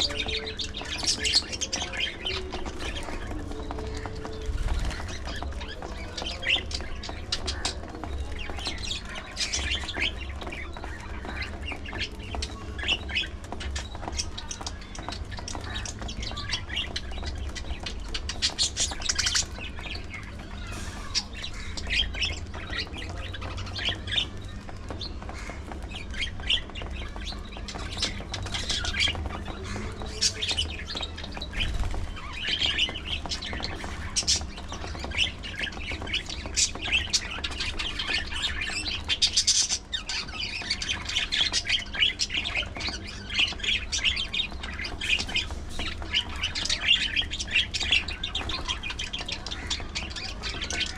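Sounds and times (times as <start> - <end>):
budgerigars chirping and squawking: 0.0 - 50.9.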